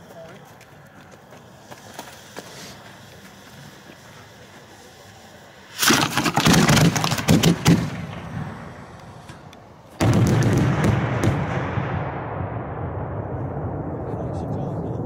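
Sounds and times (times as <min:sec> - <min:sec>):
firework crackling pops: 0:00.3 - 0:12.1.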